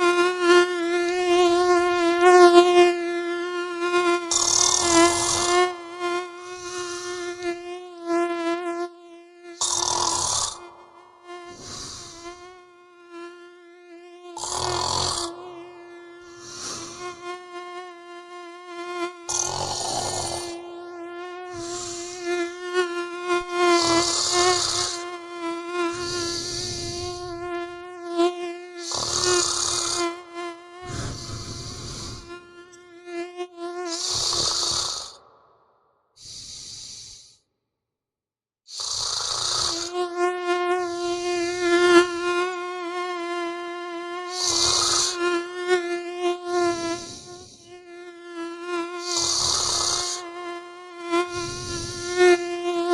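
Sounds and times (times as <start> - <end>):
mosquito whining: 0.0 - 35.5, 36.2 - 37.5, 38.7 - 52.9
person snoring: 4.3 - 5.8, 6.4 - 7.5, 9.6 - 12.7, 14.3 - 17.5, 19.2 - 20.8, 21.4 - 22.5, 23.6 - 25.1, 25.9 - 27.8, 28.8 - 30.2, 30.8 - 32.8, 33.8 - 35.4, 36.2 - 37.4, 38.7 - 40.0, 44.3 - 45.2, 46.7 - 47.8, 49.0 - 50.3, 51.2 - 52.2.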